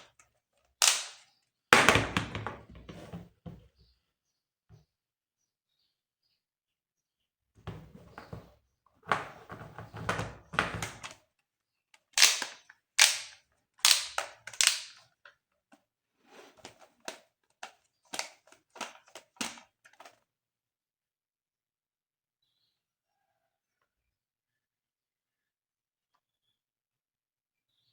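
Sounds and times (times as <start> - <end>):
plastic toy gun rattling: 0.0 - 2.7, 10.3 - 11.2, 12.0 - 15.3, 16.6 - 20.2
toy gun shot snaps: 0.8 - 1.2, 12.2 - 15.0.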